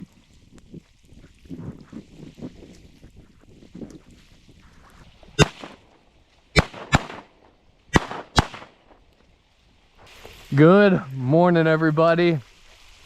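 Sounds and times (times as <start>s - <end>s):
shotgun blasts: 5.4s - 5.8s, 6.5s - 8.9s.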